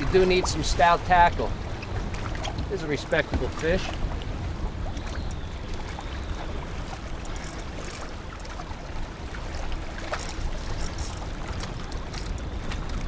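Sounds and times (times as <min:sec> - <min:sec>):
light water splashes: 0:00.0 - 0:13.0
wind and water rumble: 0:00.0 - 0:13.0
small clicks: 0:07.2 - 0:08.5.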